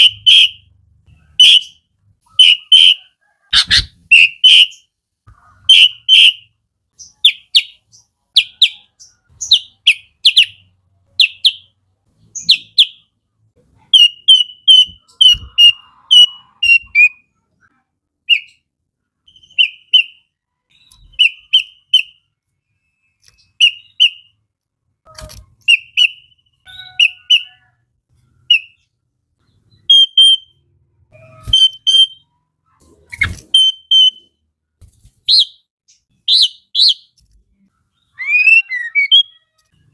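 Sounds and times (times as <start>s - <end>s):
bulbul whistled song: 0.0s - 4.9s, 5.6s - 7.8s, 14.0s - 17.3s, 18.2s - 18.6s, 19.2s - 24.4s, 25.1s - 27.8s, 28.5s - 28.9s, 29.7s - 32.4s, 33.2s - 34.4s, 35.3s - 37.2s, 38.0s - 39.7s.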